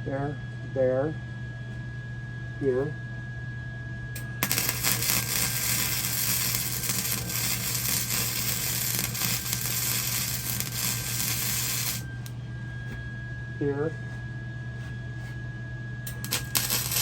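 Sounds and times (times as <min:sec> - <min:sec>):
welding arc crackling: 0:04.2 - 0:12.3, 0:16.1 - 0:17.0.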